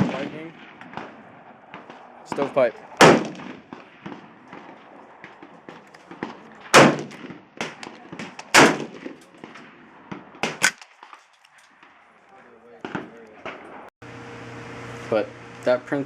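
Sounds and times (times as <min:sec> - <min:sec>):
loud gunshots: 0:00.0 - 0:04.9, 0:06.1 - 0:10.8
light sharp cracks: 0:00.0 - 0:13.6.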